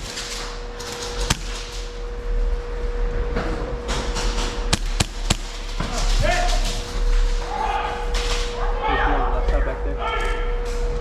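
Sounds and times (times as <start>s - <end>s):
faint steady hum: 0.0s - 11.0s
airsoft gun shots: 4.7s - 8.6s.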